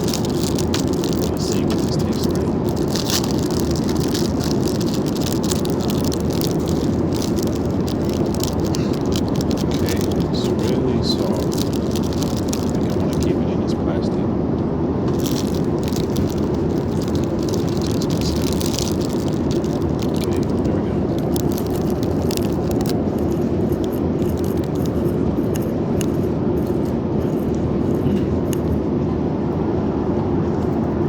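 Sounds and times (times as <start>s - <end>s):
packaging and cutlery clicks: 0.0s - 13.3s, 15.1s - 28.8s
airliner cabin drone: 0.0s - 18.5s, 19.4s - 21.5s, 22.1s - 31.0s.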